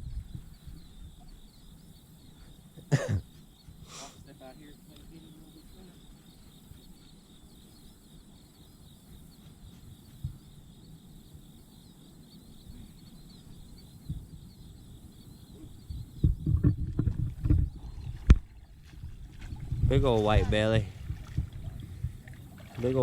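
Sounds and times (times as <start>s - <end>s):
insects chirping: 0.0s - 23.0s
low thumps and knocks: 15.8s - 23.0s.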